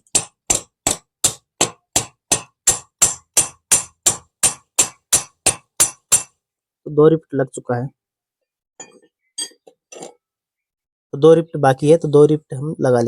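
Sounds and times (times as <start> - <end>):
hammer striking metal rivet: 0.0 - 6.4.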